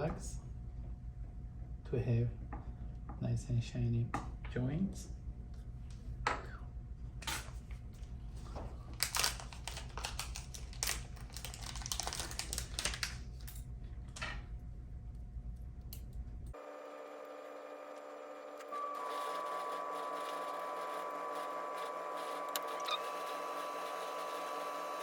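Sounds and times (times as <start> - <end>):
low electrical hum: 0.0 - 25.0.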